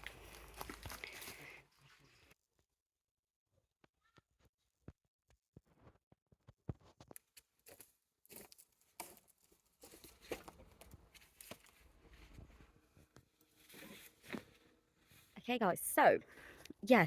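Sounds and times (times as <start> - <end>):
faint crackles and rustles: 0.0 - 2.4, 4.4 - 15.4.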